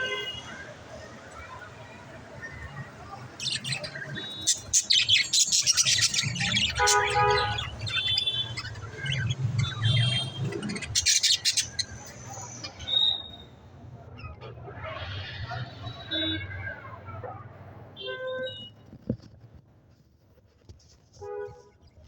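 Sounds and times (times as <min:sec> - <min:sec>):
budgerigars chirping: 0:03.2 - 0:13.3.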